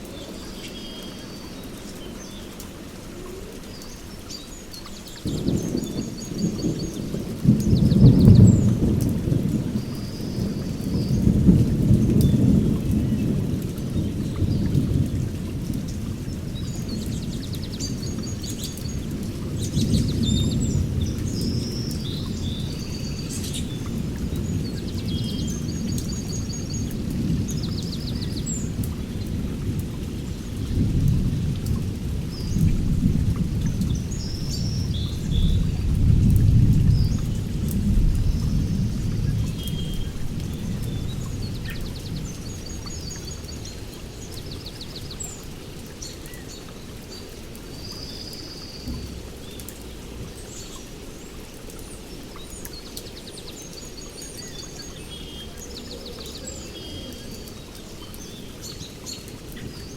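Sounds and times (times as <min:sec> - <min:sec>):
heavy rain: 0:00.0 - 0:59.9
rolling thunder: 0:05.2 - 0:45.2.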